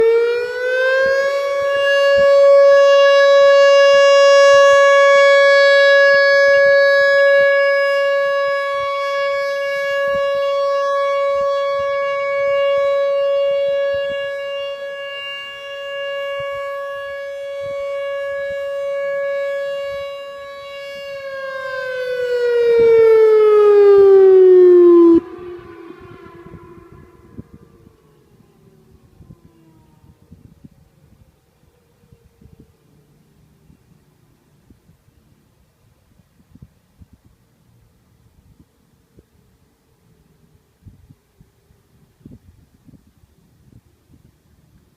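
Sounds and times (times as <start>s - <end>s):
tornado warning siren wailing: 0.0s - 36.0s.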